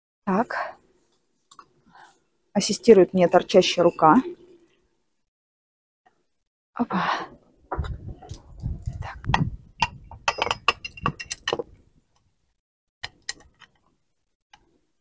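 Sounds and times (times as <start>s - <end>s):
metal lid clinking and knocking: 9.4s - 11.7s.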